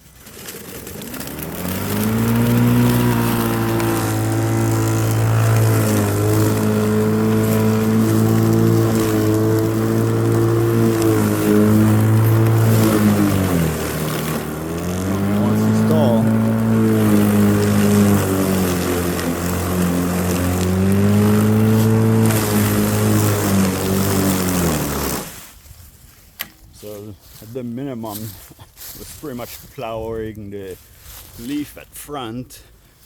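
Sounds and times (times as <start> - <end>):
lawn mower motor humming: 0.0 - 25.6.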